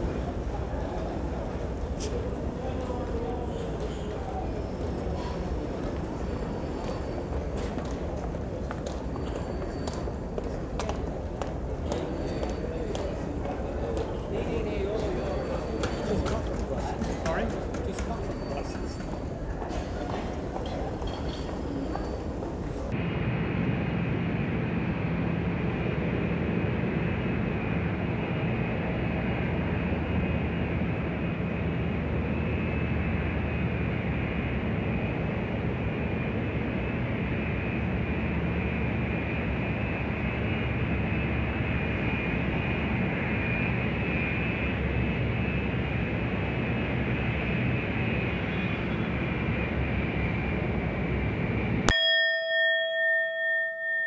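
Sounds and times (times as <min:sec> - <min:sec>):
singing bowl ringing: 0:51.9 - 0:54.0.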